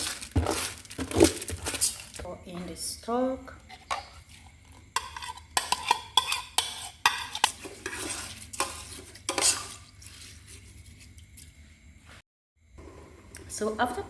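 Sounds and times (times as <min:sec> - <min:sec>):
spoon scraping metal pot: 0:03.7 - 0:11.2.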